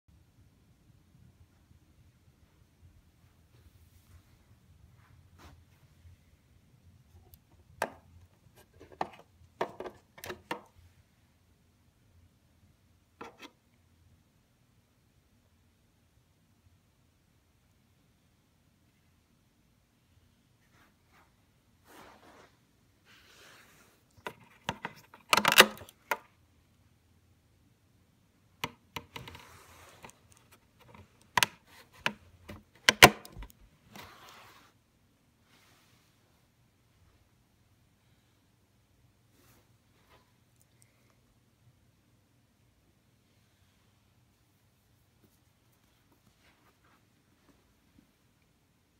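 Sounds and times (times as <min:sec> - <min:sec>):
hard objects clicking and knocking: 0:30.3 - 0:33.5.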